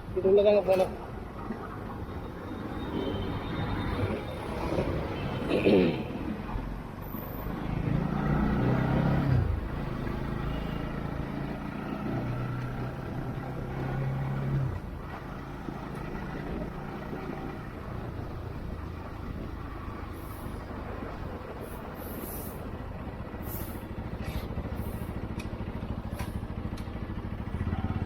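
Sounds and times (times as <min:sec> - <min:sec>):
rushing road noise: 0:00.0 - 0:28.0
motorcycle engine hum: 0:07.6 - 0:28.0.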